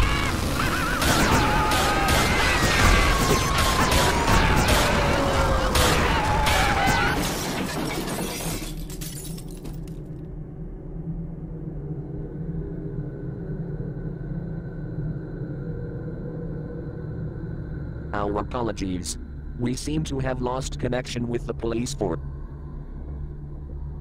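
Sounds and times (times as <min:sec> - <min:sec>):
loud crashes: 0:00.0 - 0:08.7
glass shattering: 0:05.8 - 0:10.0
muffled low hum: 0:10.1 - 0:24.0.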